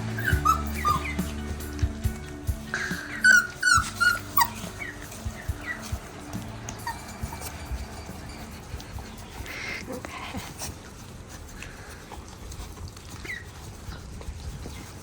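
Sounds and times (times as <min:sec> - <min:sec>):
high squeaks: 0:00.0 - 0:10.0
dogs gnawing bones: 0:00.2 - 0:15.0.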